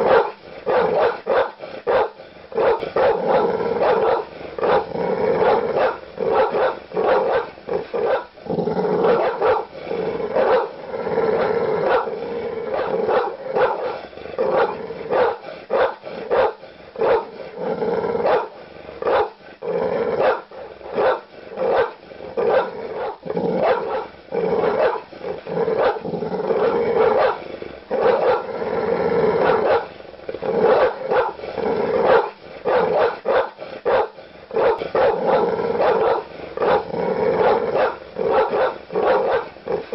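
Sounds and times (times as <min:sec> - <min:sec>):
large dog barking aggressively: 0:00.0 - 0:39.9.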